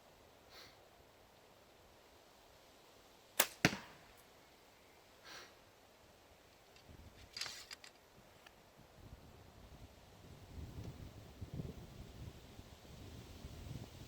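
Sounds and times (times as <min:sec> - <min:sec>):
arrow striking target: 0:03.4 - 0:04.2
bowstring snapping: 0:03.4 - 0:04.3
handling clicks and rustling: 0:06.5 - 0:08.6.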